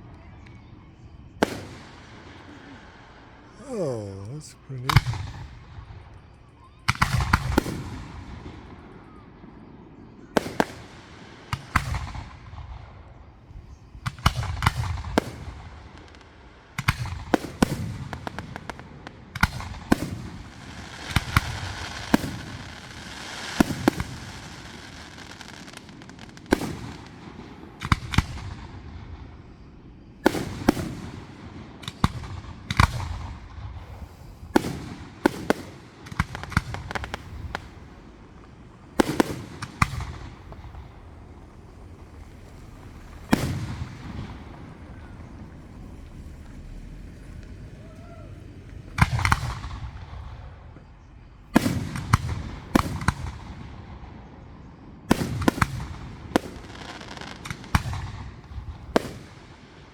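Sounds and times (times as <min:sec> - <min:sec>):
fireworks crackling: 0:00.0 - 0:09.2, 0:10.3 - 0:54.1, 0:55.0 - 0:59.9
fireworks bangs: 0:00.0 - 0:59.9
deep rumbling boom: 0:36.7 - 0:50.7.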